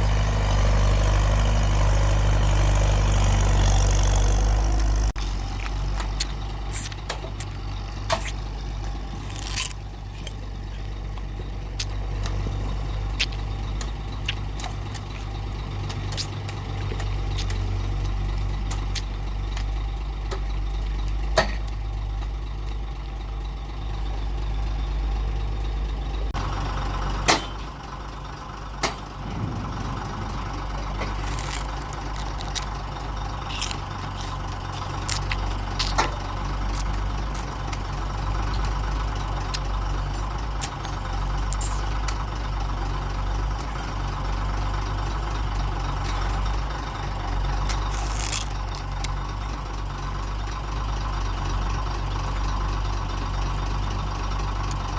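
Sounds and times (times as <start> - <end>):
heavy machinery engine running: 0.0 - 54.9
sharp knocks and clanks: 28.8 - 31.8.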